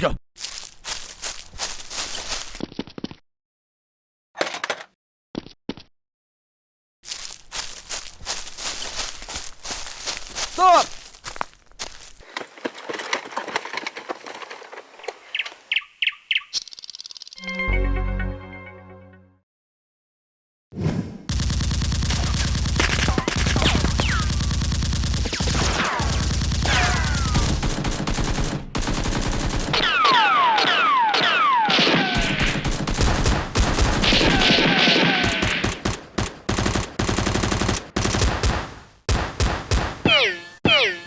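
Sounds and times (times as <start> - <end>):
automatic gunfire: 21.3 - 39.9.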